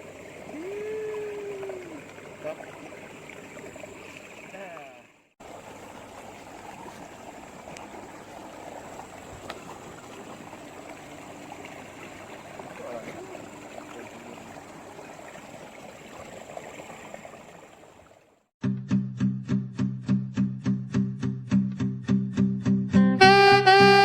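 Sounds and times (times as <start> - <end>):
water running and lapping: 0.0 - 18.5.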